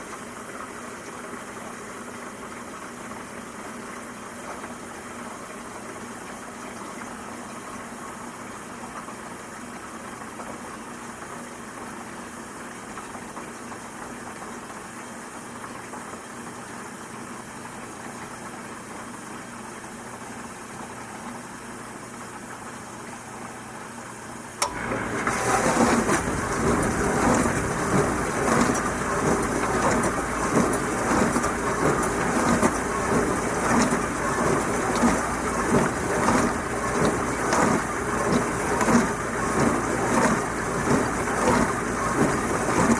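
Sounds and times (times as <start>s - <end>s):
dishwasher hum: 24.5s - 42.9s
water spraying inside dishwasher: 24.6s - 42.9s.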